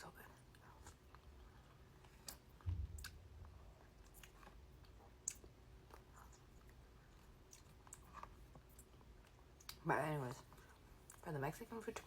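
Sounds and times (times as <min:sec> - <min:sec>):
wet chewing and mouth clicks: 0:00.4 - 0:11.2
short low thump: 0:02.6 - 0:03.1.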